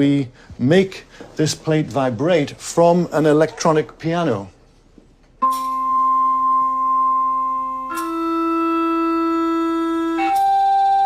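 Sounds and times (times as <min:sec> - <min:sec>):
sustained electronic piano tone: 0:05.4 - 0:11.0.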